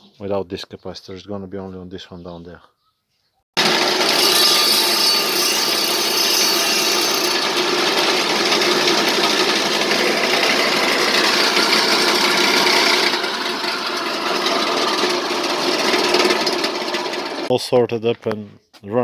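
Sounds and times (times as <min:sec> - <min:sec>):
electric wood saw whirring: 0:03.6 - 0:17.5.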